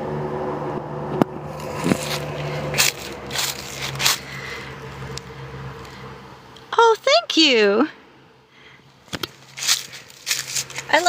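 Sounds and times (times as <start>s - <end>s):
footsteps crunching on path: 1.5s - 5.9s, 9.0s - 11.0s.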